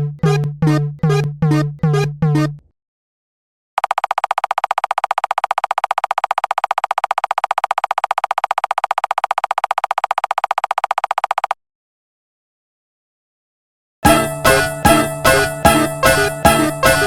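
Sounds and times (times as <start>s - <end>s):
railroad crossing alarm: 14.0s - 17.0s.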